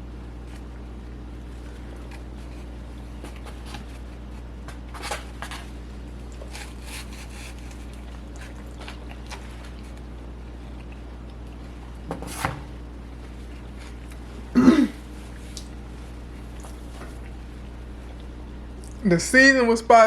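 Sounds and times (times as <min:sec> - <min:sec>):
steady low hum: 0:00.0 - 0:20.0
chewing: 0:05.5 - 0:12.1, 0:13.2 - 0:14.5, 0:15.2 - 0:19.0.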